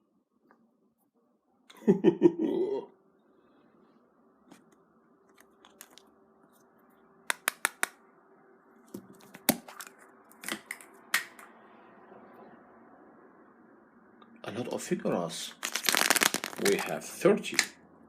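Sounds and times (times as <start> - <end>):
faint steady hum: 0.0 - 18.0
plastic toy egg clicks: 7.3 - 7.9.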